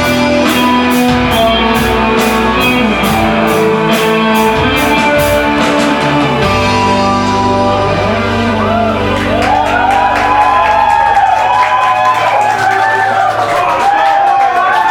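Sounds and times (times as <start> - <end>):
rock band final chord ringing: 0.0 - 13.3
sustained low bass note: 6.4 - 11.4
audience shouting and whooping: 8.1 - 14.9.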